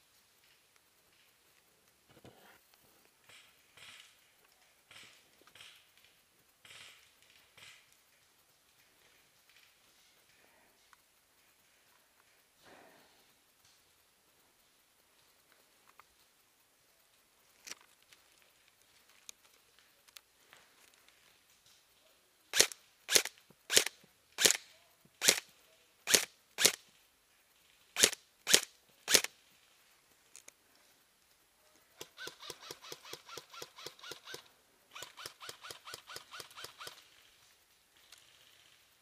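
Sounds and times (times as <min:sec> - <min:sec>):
full-auto bursts of rapid clicks: 0:22.5 - 0:27.0, 0:27.6 - 0:29.6, 0:32.0 - 0:39.0
airsoft gun single shots: 0:22.6 - 0:24.6.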